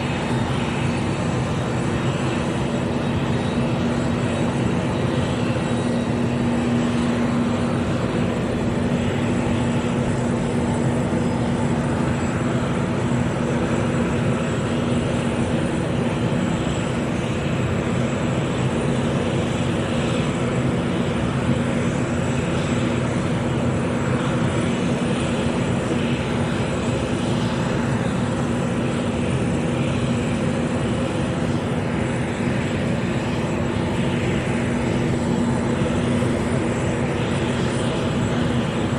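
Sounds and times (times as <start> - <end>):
jet aircraft engines idling: 0.0 - 38.9.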